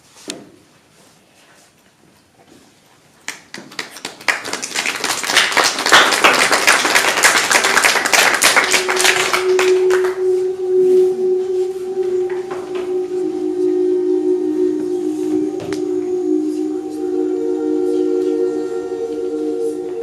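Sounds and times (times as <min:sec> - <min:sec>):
audience applauding: 0:03.3 - 0:10.5
held musical note: 0:05.3 - 0:20.0.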